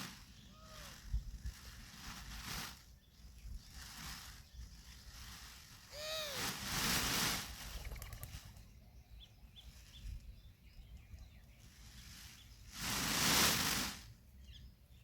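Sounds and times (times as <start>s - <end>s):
peafowl calling: 0.0s - 1.0s, 5.9s - 7.0s.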